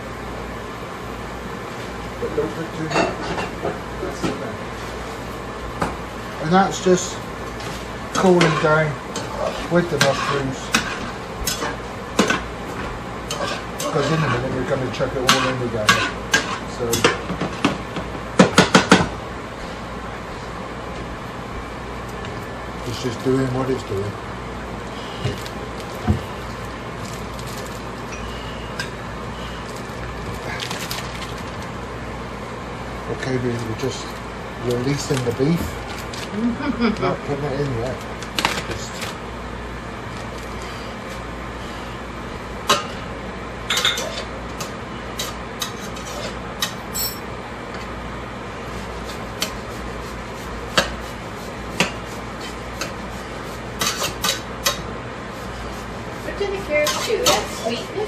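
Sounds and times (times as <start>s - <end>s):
low background hum: 0.0s - 58.0s
utensils and dishes clinking: 13.3s - 17.6s, 43.7s - 47.3s, 53.8s - 54.8s, 56.8s - 57.7s.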